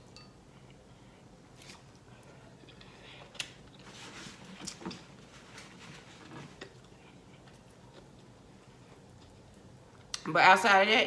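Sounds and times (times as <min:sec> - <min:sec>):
person chewing food: 0:06.2 - 0:10.2.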